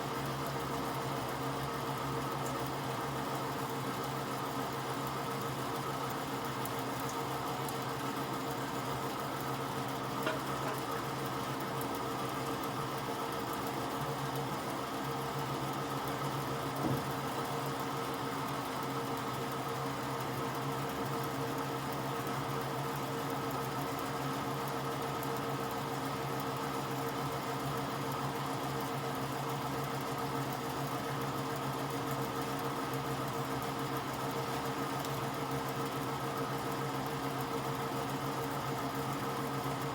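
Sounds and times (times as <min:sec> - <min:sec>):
steady machine hum: 0:07.3 - 0:15.2.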